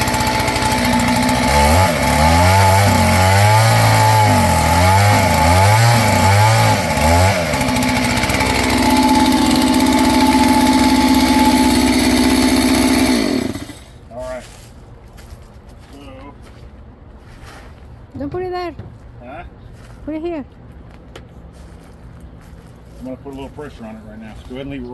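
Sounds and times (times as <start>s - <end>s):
chainsaw cutting into tree: 0.0s - 14.1s.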